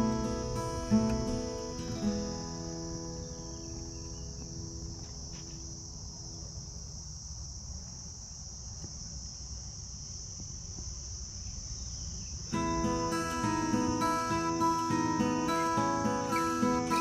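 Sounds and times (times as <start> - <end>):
low rumble: 0.0 - 4.8
faint guitar music: 0.0 - 5.8, 12.5 - 17.0
crickets chirping: 0.0 - 17.0.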